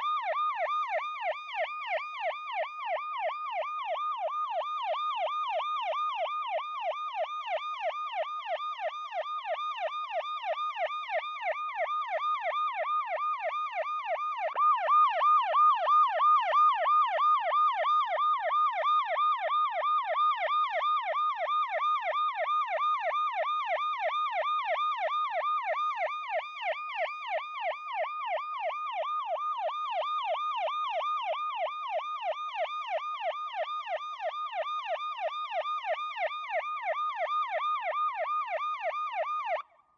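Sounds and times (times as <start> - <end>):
police siren yelping: 0.0 - 39.9.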